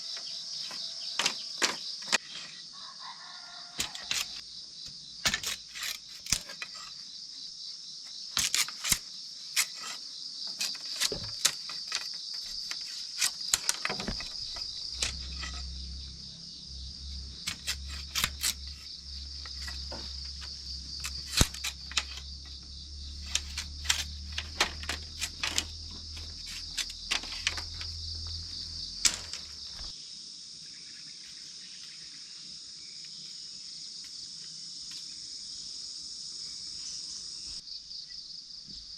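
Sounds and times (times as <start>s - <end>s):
crickets chirping: 0.0s - 38.9s
sharp knocks and clicks: 9.6s - 15.7s, 17.4s - 28.4s, 29.0s - 29.9s
low hum: 14.2s - 24.4s.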